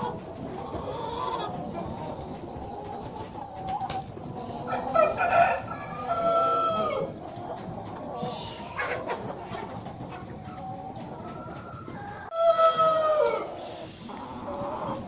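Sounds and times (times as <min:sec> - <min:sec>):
chickens clucking and calling: 0:00.0 - 0:15.0
rooster crow: 0:05.0 - 0:07.1.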